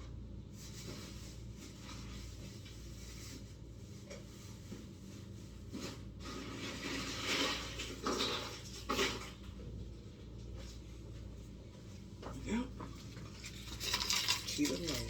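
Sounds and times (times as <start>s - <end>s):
low room hum: 0.0s - 15.0s
ice and containers rattling: 6.3s - 9.4s, 13.2s - 15.0s.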